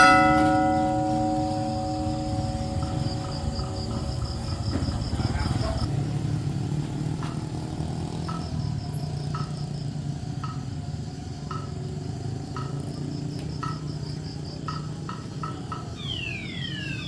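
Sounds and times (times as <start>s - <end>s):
insect pulsing trill: 0.0s - 5.9s, 11.5s - 17.0s
steady low hum: 0.0s - 5.9s.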